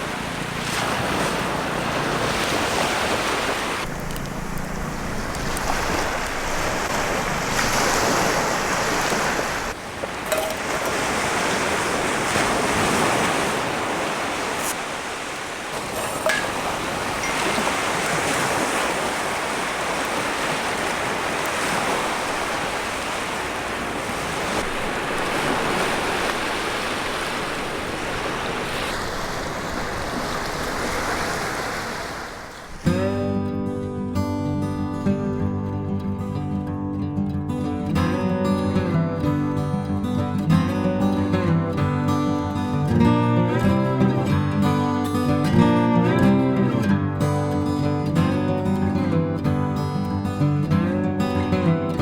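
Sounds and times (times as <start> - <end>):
sea waves washing on shore: 0.0 - 33.2
wind: 0.0 - 52.0.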